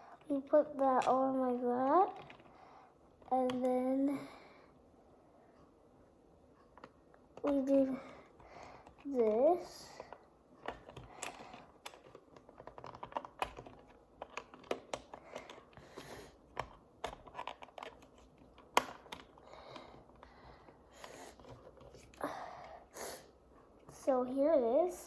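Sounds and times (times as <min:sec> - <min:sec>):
plastic toy parts clicking: 0:00.2 - 0:02.5, 0:10.0 - 0:20.3.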